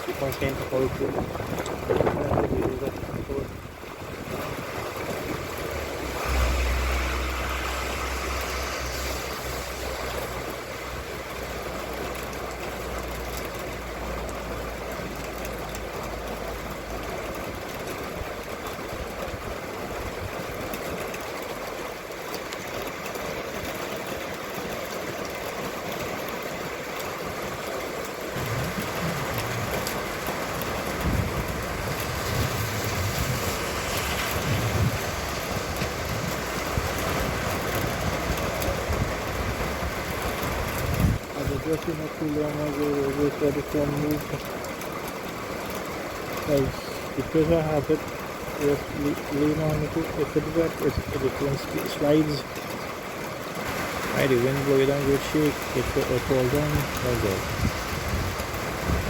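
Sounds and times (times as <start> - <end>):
rain hissing: 0.0 - 59.0
vehicle engine rumble: 0.0 - 59.0
wind buffeting microphone: 0.2 - 9.0, 28.4 - 41.8, 55.4 - 59.0.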